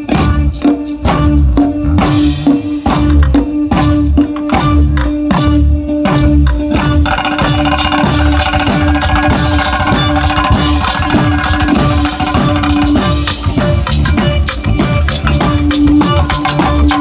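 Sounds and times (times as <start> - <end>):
drum strokes dropping in pitch: 0.0 - 17.0
busy higher melody line: 3.9 - 17.0.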